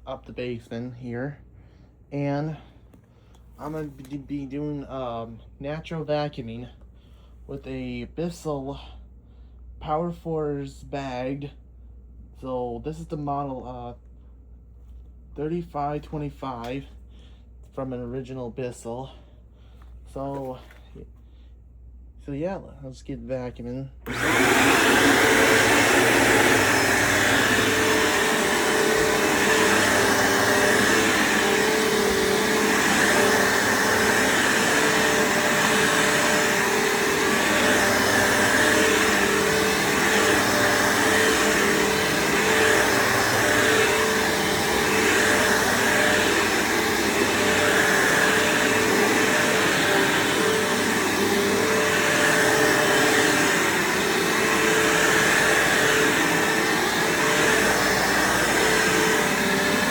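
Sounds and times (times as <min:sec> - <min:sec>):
upright vacuum cleaner running: 0:24.0 - 0:59.9.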